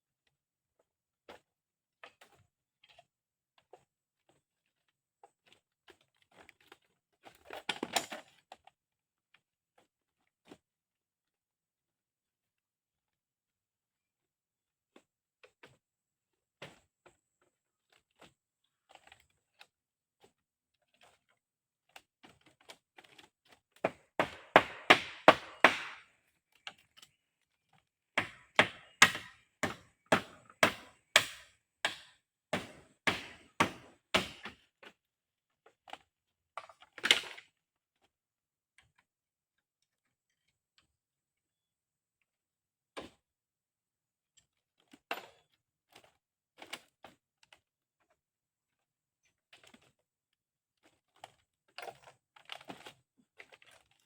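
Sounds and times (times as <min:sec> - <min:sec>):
blade chopping into wood: 0:23.9 - 0:26.1, 0:28.2 - 0:34.6.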